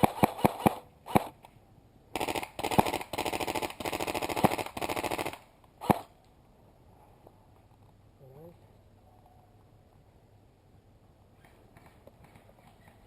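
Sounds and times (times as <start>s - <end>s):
airsoft guns firing: 0.0s - 1.4s, 2.1s - 6.1s.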